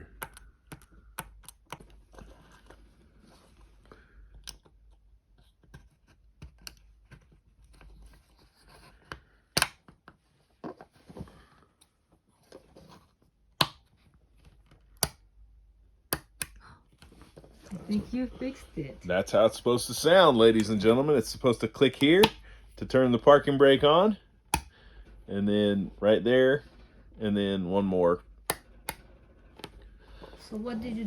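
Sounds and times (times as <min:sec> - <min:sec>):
plastic rocker switch clicking: 0:28.5 - 0:29.0.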